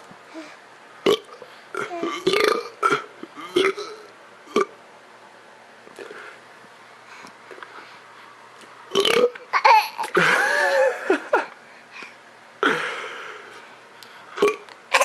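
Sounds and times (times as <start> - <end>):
boy burping loudly: 1.1 - 4.7, 8.9 - 11.0, 14.4 - 15.0
laughter: 10.1 - 11.6.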